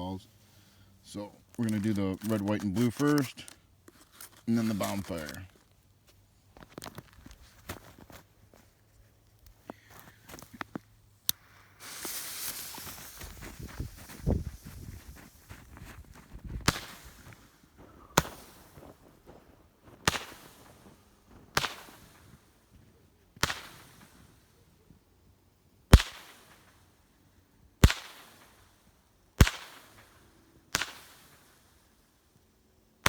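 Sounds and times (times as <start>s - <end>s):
firework shots firing: 11.5s - 14.2s, 16.6s - 19.0s, 20.0s - 22.6s, 23.4s - 24.5s, 25.9s - 26.9s, 27.8s - 28.8s, 29.4s - 31.8s.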